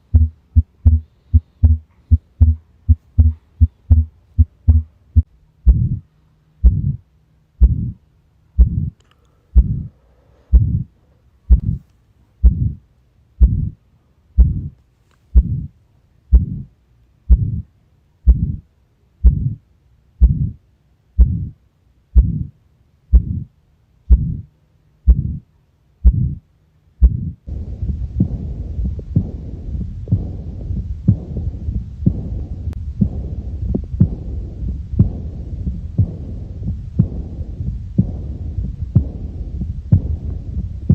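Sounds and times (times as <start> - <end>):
heartbeat through stethoscope: 0.0 - 7.0, 7.6 - 8.0, 8.6 - 9.0, 9.6 - 9.9, 10.5 - 10.9, 11.5 - 11.8, 12.4 - 12.8, 13.4 - 13.8, 14.4 - 14.8, 15.4 - 15.7, 16.3 - 16.7, 17.3 - 17.7, 18.3 - 18.6, 19.2 - 19.6, 20.2 - 20.6, 21.2 - 21.6, 22.2 - 22.5, 23.1 - 23.5, 24.1 - 24.5, 25.1 - 25.4, 26.0 - 26.4, 27.0 - 40.9
faint steady hum: 0.0 - 40.9.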